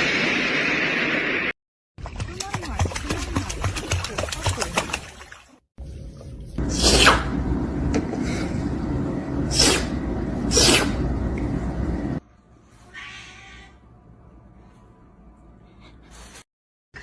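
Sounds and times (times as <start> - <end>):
loud low rumble: 6.6 - 12.2
animal hissing: 9.5 - 11.0.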